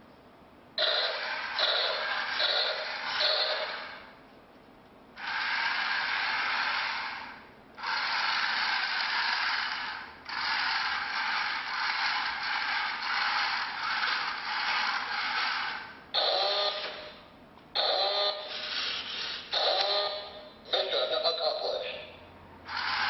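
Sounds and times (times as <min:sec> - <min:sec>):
toy robot motors whirring and rattling: 0:00.8 - 0:04.0, 0:05.2 - 0:17.1, 0:17.8 - 0:20.1, 0:22.7 - 0:23.0.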